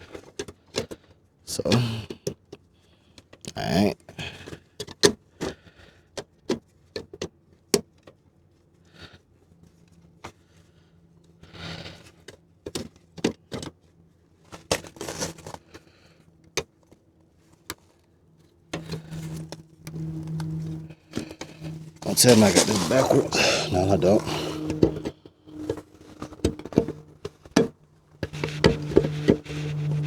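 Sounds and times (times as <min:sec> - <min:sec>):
low steady hum: 0:18.8 - 0:30.0.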